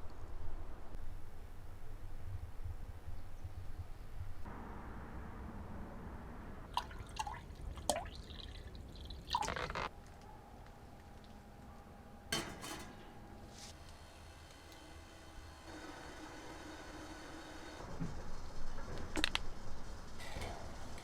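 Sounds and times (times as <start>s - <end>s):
liquid dripping and splashing: 6.7s - 9.9s.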